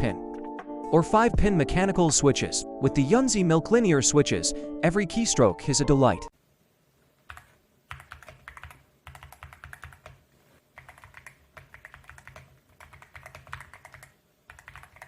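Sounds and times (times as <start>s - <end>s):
mechanical keyboard typing: 7.3s - 10.2s, 10.8s - 15.0s.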